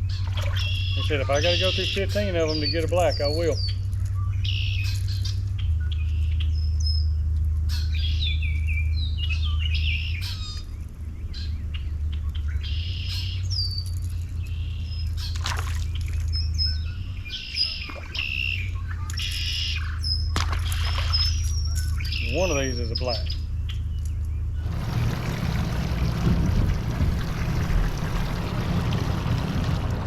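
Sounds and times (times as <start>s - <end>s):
birds chirping and calling: 0.0s - 7.0s, 7.7s - 24.7s
steady low hum: 23.4s - 30.0s.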